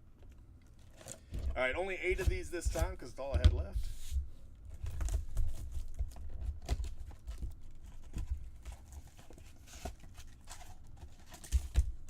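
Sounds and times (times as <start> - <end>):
wrappers crinkling and rustling: 4.7 - 12.0.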